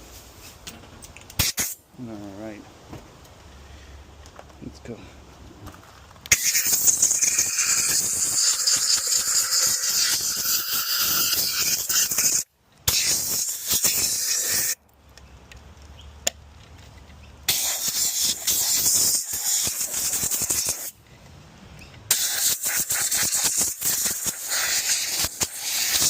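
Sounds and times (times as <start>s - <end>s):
compressed air blow gun hissing: 1.3s - 1.8s, 6.3s - 14.8s, 17.5s - 21.0s, 22.1s - 26.0s.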